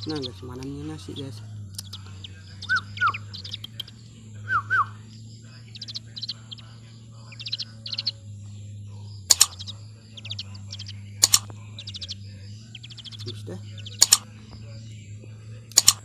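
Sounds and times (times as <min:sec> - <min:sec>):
sharp clicks: 0:00.0 - 0:08.6, 0:09.2 - 0:14.8, 0:15.6 - 0:16.0
whistled notes: 0:00.0 - 0:14.8
birds chirping: 0:00.0 - 0:16.0
steady low hum: 0:00.0 - 0:16.0.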